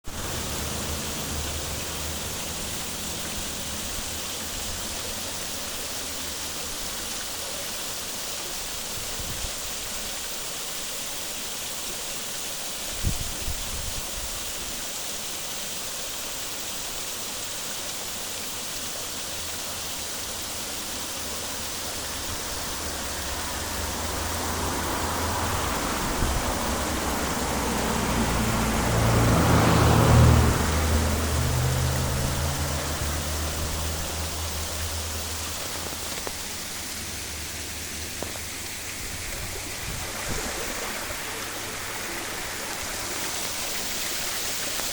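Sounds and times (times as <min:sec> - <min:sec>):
waterfall roaring: 0:00.1 - 0:13.0, 0:14.2 - 0:44.9
low rumbling buffets: 0:21.9 - 0:43.2.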